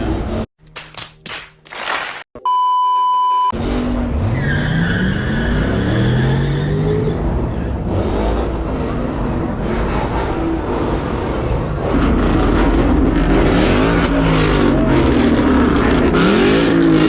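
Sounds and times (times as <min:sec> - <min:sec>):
censor bleep: 0:02.4 - 0:03.6
car engine revving: 0:03.6 - 0:17.0.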